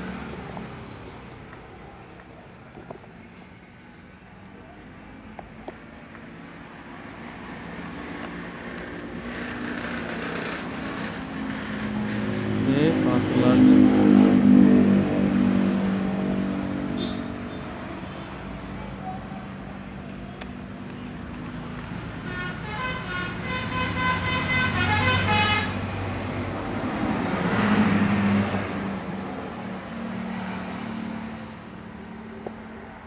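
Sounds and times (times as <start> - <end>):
motor vehicles passing: 0.0 - 3.0, 4.6 - 33.0
horn-like tone: 22.2 - 25.8.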